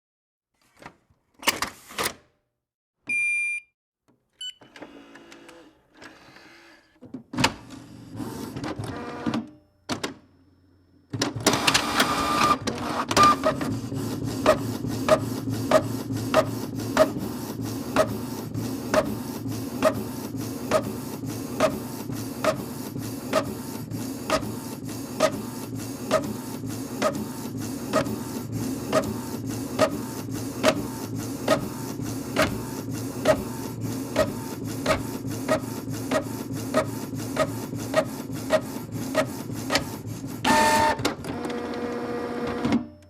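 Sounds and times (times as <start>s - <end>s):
inkjet printer whirring: 7.7s - 9.4s, 11.2s - 42.9s
printer clicking: 11.2s - 42.9s.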